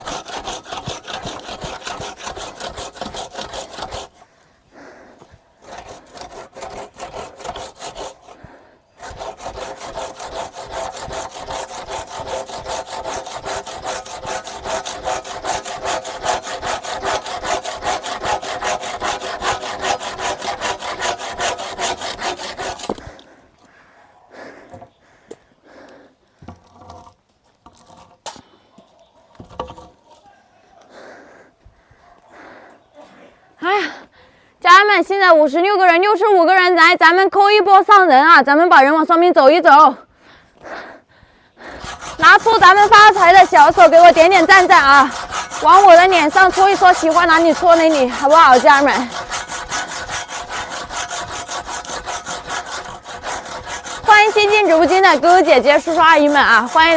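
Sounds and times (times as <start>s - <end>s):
rapid scraping strokes: 9.0s - 23.2s, 41.6s - 56.9s.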